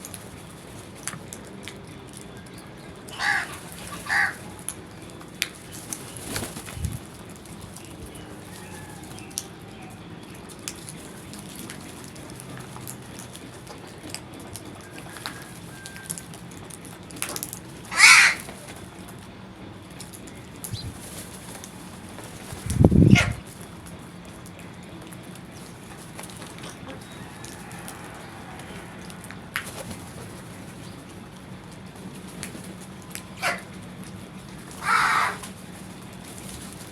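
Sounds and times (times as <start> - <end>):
crows cawing: 3.1 - 4.8, 17.8 - 18.7, 26.6 - 29.8, 33.4 - 33.7, 34.7 - 35.6.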